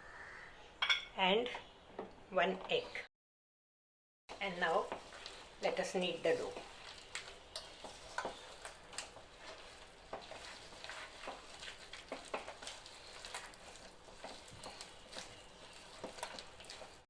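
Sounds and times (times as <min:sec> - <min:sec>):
sticky dough squelches: 0:04.4 - 0:17.0.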